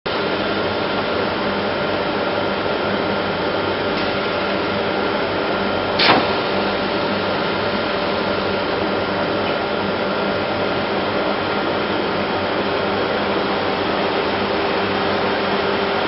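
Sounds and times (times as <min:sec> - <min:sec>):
machinery humming: 0:00.1 - 0:16.0.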